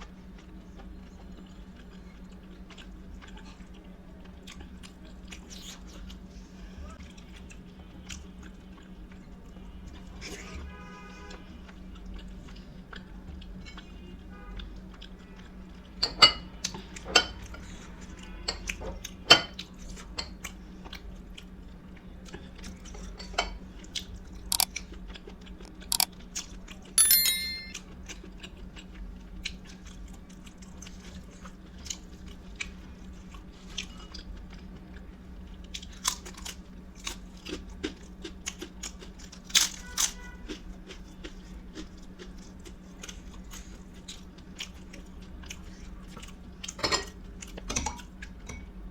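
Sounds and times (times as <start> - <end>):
chewing crunchy chips: 0.0 - 10.2, 11.5 - 15.8, 18.7 - 26.8, 28.4 - 48.5
dish or utensil clink: 27.0 - 27.8.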